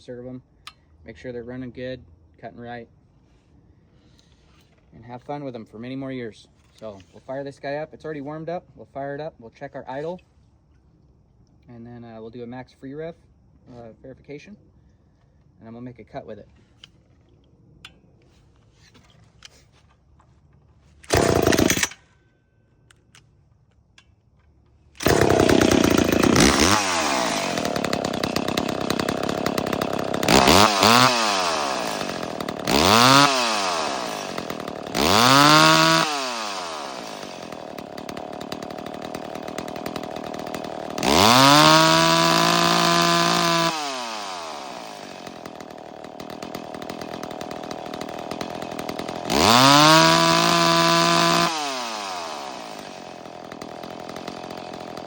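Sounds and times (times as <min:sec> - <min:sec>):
chainsaw idling and revving: 0:21.1 - 0:22.0, 0:25.0 - 0:55.0.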